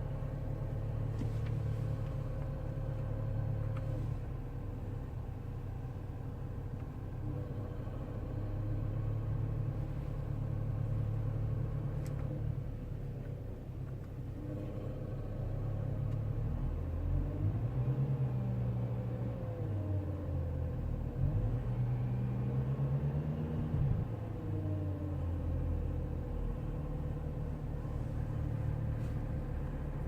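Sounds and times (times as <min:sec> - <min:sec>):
car engine running: 0:00.0 - 0:17.0, 0:23.6 - 0:30.0.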